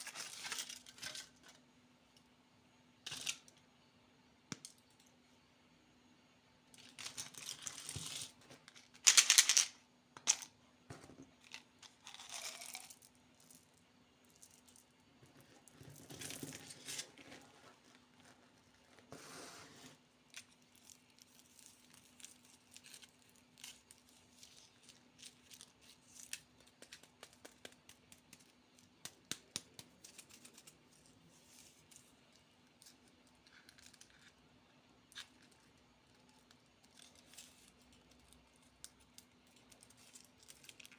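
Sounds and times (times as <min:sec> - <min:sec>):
candy wrapper crinkling: 0:11.8 - 0:13.0, 0:20.4 - 0:28.5, 0:35.1 - 0:40.9.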